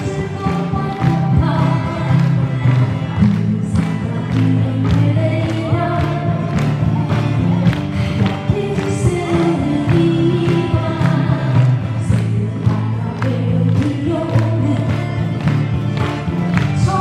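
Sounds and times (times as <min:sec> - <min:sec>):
song with drum beat and singing: 0:00.0 - 0:17.0.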